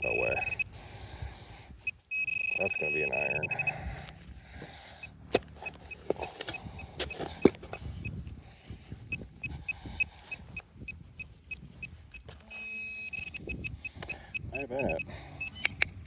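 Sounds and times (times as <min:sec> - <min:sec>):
metal detector chirps: 0:00.0 - 0:00.8, 0:01.8 - 0:03.8, 0:05.0 - 0:08.2, 0:09.0 - 0:16.0
digging tool scraping soil: 0:05.3 - 0:08.0.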